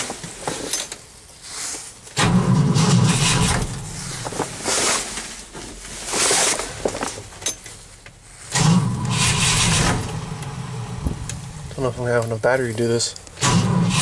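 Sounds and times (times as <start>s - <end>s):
engine cranking by starter motor: 2.2s - 4.4s, 8.4s - 12.4s, 13.2s - 14.0s.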